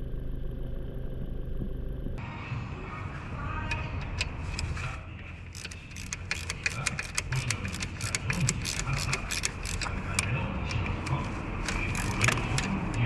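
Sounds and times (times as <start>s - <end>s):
engine running rumble: 0.0s - 2.2s
thin high whine: 0.0s - 2.2s
rapid metallic engine clicks: 5.4s - 13.0s.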